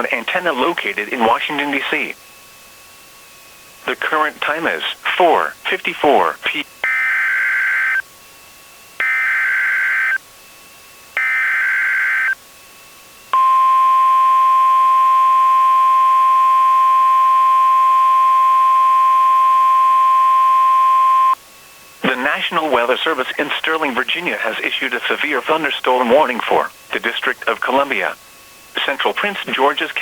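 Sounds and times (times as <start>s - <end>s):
loud steady alarm tone: 3.9s - 8.0s, 9.0s - 10.2s, 11.2s - 12.4s, 13.4s - 21.4s.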